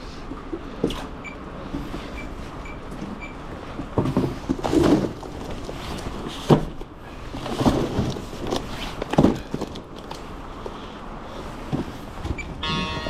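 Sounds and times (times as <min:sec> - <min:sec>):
steady background noise: 0:00.0 - 0:13.0
boxes thudding when stacked: 0:03.8 - 0:10.0.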